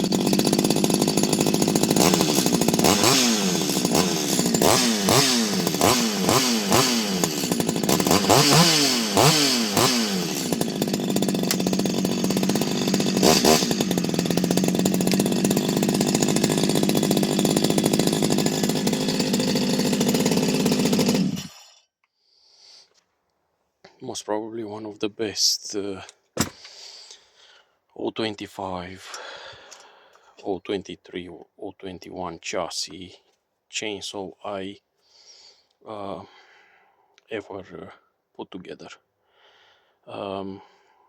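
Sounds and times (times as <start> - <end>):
chainsaw revving and idling: 0.0 - 21.8.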